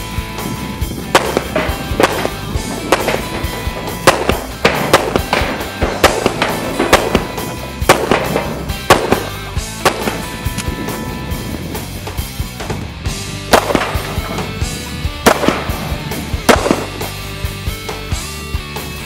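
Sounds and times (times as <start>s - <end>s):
rock music: 0.0s - 19.0s.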